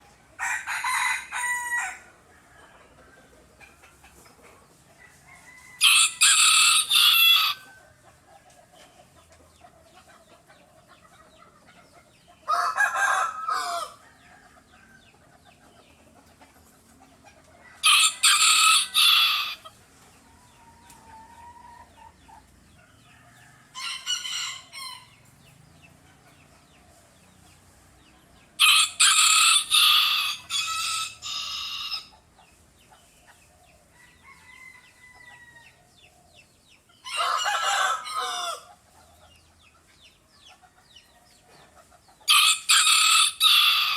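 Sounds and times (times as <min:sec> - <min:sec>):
rooster crowing: 0:00.4 - 0:02.8, 0:05.1 - 0:07.7, 0:12.5 - 0:14.9, 0:17.8 - 0:19.7, 0:28.6 - 0:32.1, 0:34.0 - 0:35.8, 0:37.0 - 0:38.8, 0:42.3 - 0:43.9.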